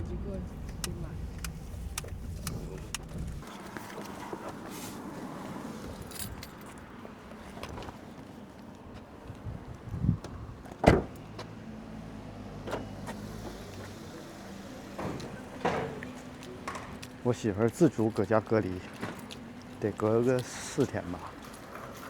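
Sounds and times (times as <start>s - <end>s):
car low rumble: 0.0s - 5.2s.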